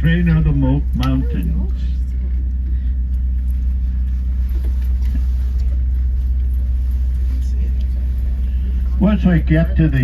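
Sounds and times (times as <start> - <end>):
train rumbling: 0.0 - 10.0.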